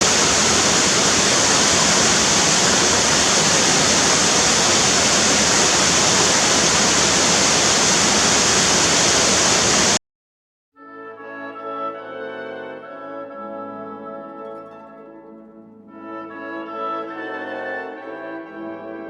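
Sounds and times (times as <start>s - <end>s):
water rushing: 0.0s - 10.0s.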